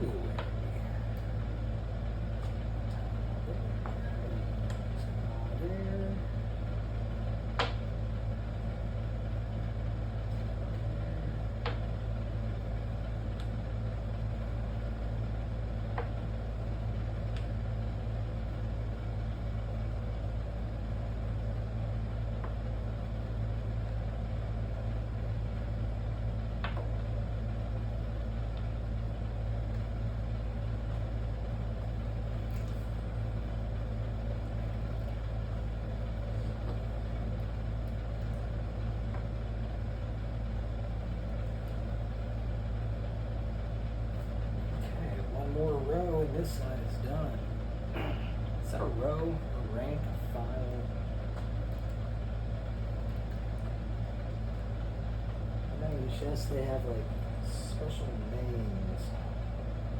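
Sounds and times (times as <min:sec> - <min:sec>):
low mechanical hum: 0:00.0 - 0:59.9.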